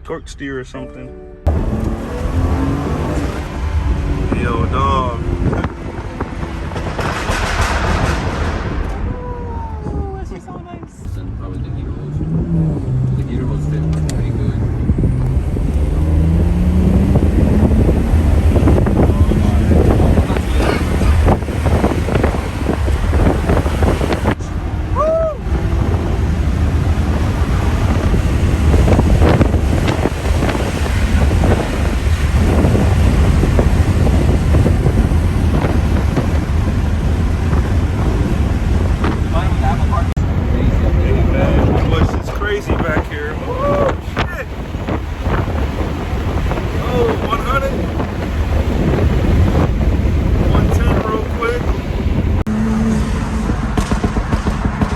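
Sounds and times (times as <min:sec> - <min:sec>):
road and engine rumble: 0:00.0 - 0:54.9
short rising falling tone: 0:00.7 - 0:05.4
wind buffeting microphone: 0:01.5 - 0:11.2, 0:11.8 - 0:54.9.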